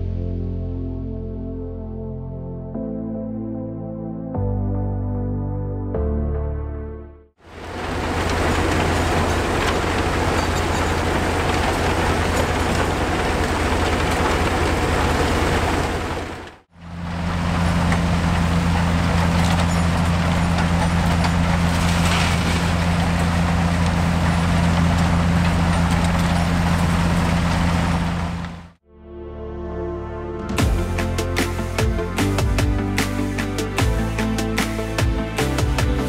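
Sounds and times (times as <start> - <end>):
demolition machinery engine drone: 7.4 - 28.8.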